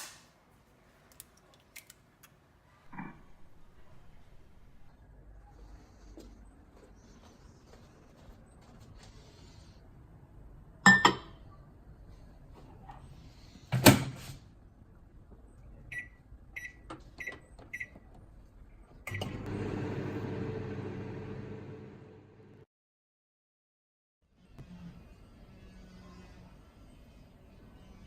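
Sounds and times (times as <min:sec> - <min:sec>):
microwave running hum: 0:19.0 - 0:22.6.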